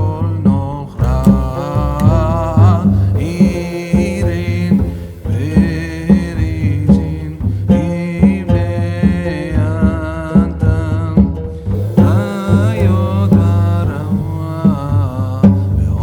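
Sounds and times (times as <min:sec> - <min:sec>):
sustained melody: 0:00.0 - 0:10.4, 0:11.7 - 0:16.0
low drum beat: 0:00.0 - 0:16.0.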